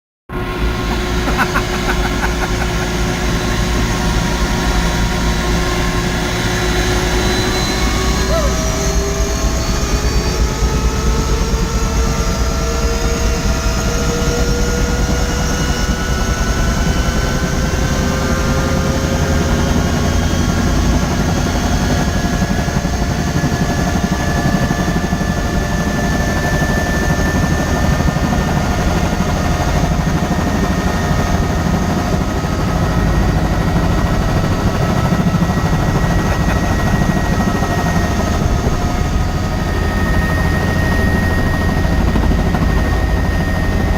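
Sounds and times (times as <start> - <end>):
helicopter engine and rotor: 0.3 - 43.9
thin whining tones rising: 5.1 - 10.8.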